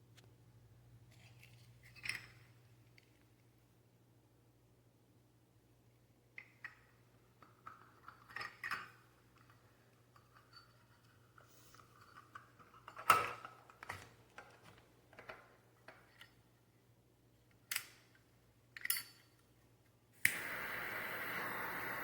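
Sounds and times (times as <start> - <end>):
lighter clicks: 20.2 - 22.0
torch flame jet hiss: 20.2 - 22.0.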